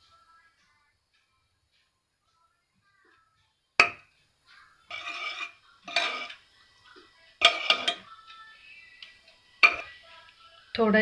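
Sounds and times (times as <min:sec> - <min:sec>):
spoon clinking on a pan: 0:04.9 - 0:06.4, 0:07.4 - 0:08.1, 0:09.6 - 0:10.0.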